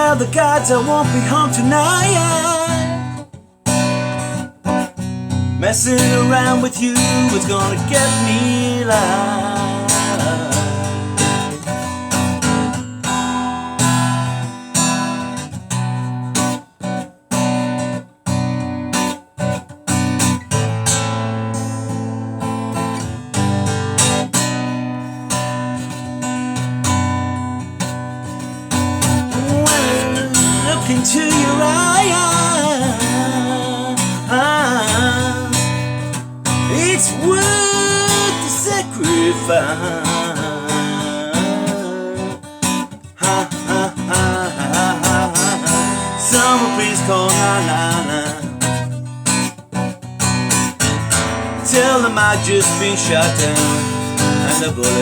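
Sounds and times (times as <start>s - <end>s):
person singing: 0.0s - 3.2s, 5.6s - 11.5s, 29.0s - 48.8s, 51.6s - 55.0s
acoustic guitar: 0.0s - 55.0s.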